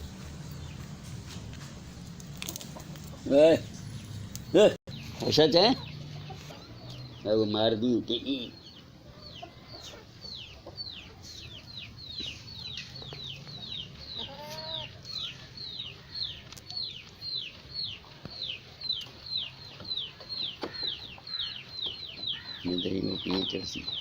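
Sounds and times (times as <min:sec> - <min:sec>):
bird peeping: 0:08.2 - 0:24.0.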